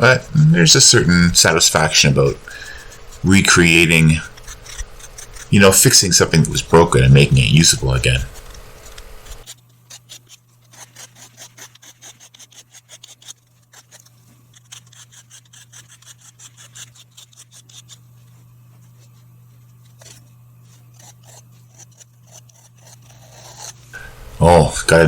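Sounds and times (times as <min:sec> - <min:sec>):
steady low hum: 0:00.0 - 0:25.0
hand file rasping: 0:02.4 - 0:18.0, 0:19.8 - 0:23.8.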